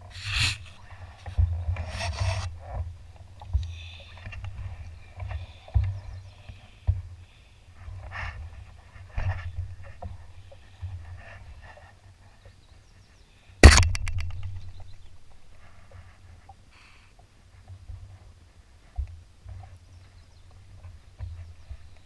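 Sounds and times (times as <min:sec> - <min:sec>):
rubbing and scraping: 0:00.0 - 0:02.9.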